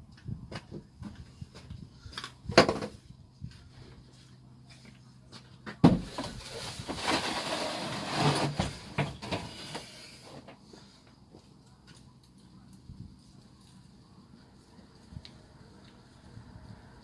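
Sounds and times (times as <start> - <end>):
objects clattering and rustling: 3.9 - 10.8.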